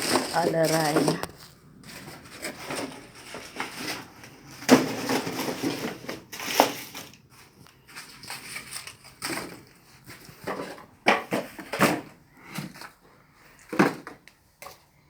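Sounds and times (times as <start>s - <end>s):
cardboard box crackling and crunching: 0.0s - 7.2s.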